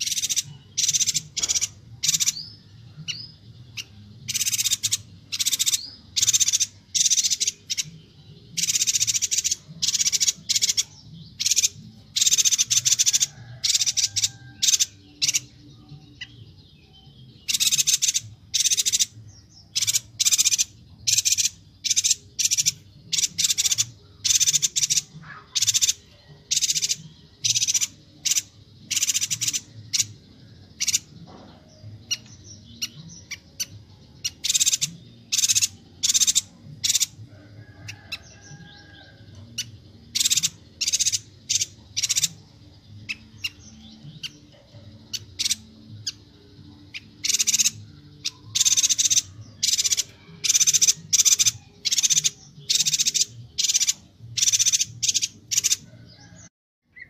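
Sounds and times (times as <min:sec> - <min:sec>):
bird buzzy calls: 0:00.0 - 0:02.5, 0:19.7 - 0:30.2, 0:46.9 - 0:56.3.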